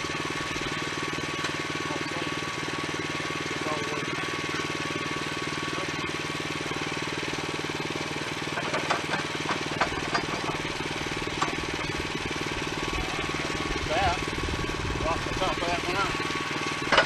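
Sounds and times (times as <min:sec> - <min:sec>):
engine running steadily: 0:00.0 - 0:17.0
sharp clanks and knocks: 0:08.5 - 0:10.7, 0:11.4 - 0:11.9.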